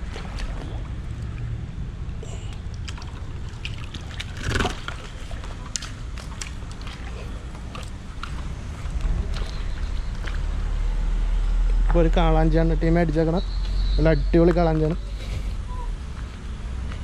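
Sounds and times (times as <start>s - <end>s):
fish splashing: 0.0s - 10.5s
low steady rumble: 0.0s - 17.0s.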